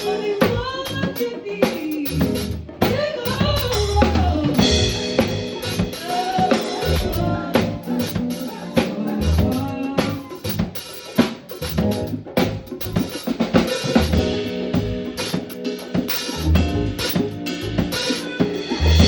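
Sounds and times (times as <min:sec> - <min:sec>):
drum kit: 0:00.0 - 0:19.0
bass line: 0:02.1 - 0:05.9, 0:06.9 - 0:08.1, 0:09.2 - 0:10.7, 0:16.3 - 0:17.9, 0:18.8 - 0:19.0.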